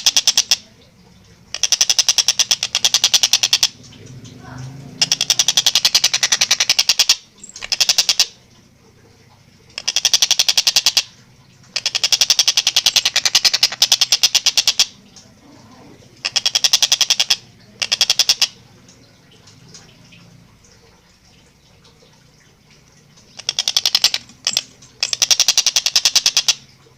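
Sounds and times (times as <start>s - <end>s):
kingfisher cackling call: 4.4s - 8.4s, 11.8s - 15.0s, 16.2s - 18.6s.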